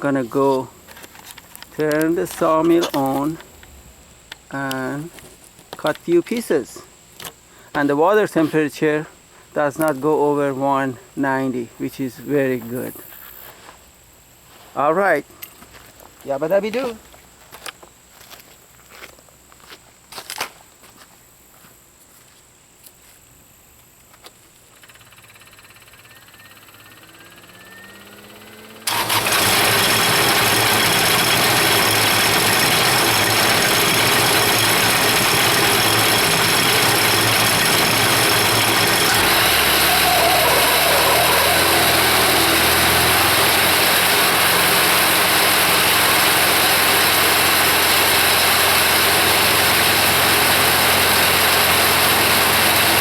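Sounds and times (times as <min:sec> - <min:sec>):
diesel engine running: 0:00.0 - 0:04.0, 0:25.6 - 0:53.0
faint rising whine: 0:25.8 - 0:28.8.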